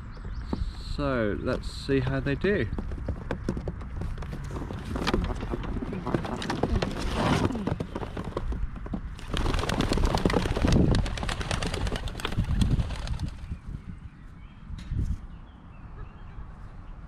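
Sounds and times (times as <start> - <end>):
pigeon wings flapping: 3.0 - 13.4.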